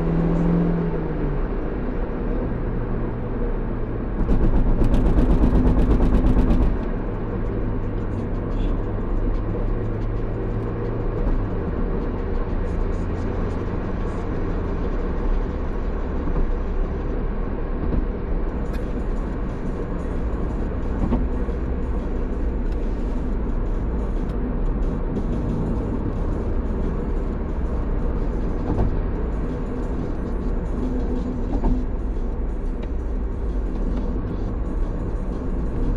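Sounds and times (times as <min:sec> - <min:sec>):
vehicle engine drone: 0:00.0 - 0:35.9
music: 0:17.9 - 0:35.9.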